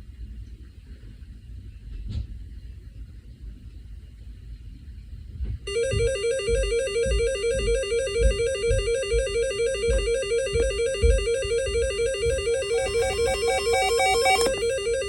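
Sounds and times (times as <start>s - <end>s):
chiptune music: 5.7s - 15.0s.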